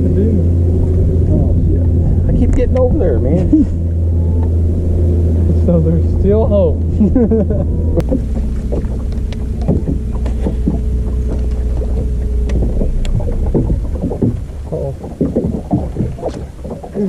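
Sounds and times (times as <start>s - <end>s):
boat motor running: 0.0s - 17.0s
knocks against hull: 8.0s - 17.0s.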